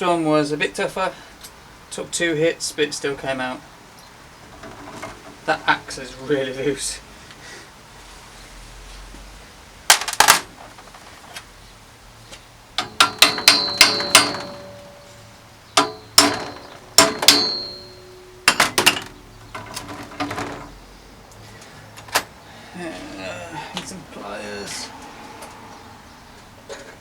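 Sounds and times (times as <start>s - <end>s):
steel tools tapping metal: 12.8s - 20.7s.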